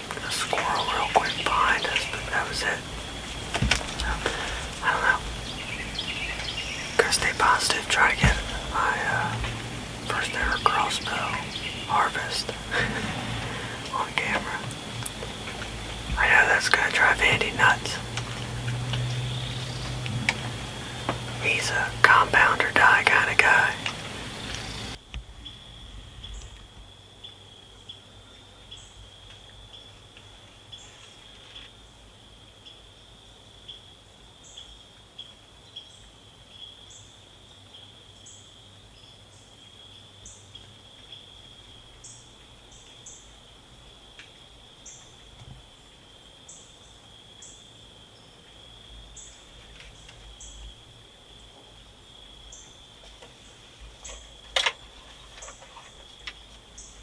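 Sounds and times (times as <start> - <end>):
faint high ticks: 0.0 - 13.0, 13.6 - 25.2, 49.3 - 50.8
crickets trilling: 0.0 - 57.0.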